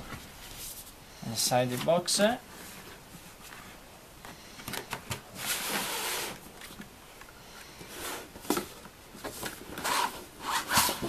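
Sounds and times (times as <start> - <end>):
box scraping out of carton: 5.4 - 6.4, 9.8 - 11.0.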